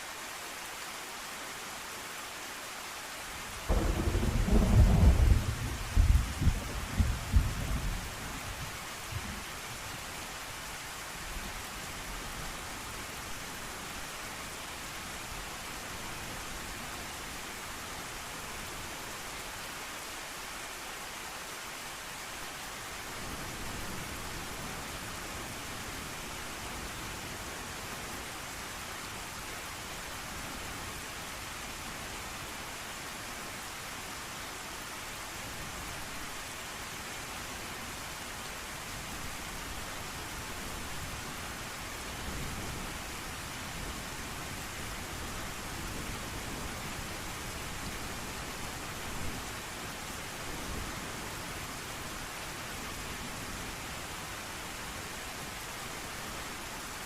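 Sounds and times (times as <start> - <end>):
steady rain: 0.0 - 57.0
low thunder rumble: 3.7 - 8.0.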